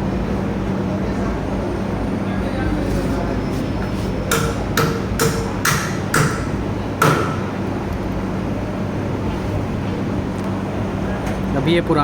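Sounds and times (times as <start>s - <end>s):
steady low hum: 0.0s - 12.0s
metallic knocks: 4.3s - 7.7s.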